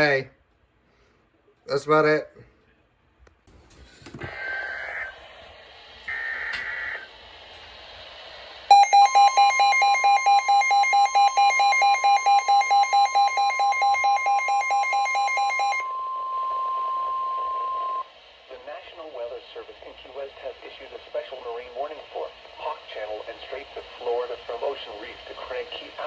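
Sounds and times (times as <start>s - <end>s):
rapid alarm beeping: 8.7s - 18.1s
steady warning alarm tone: 8.7s - 18.1s.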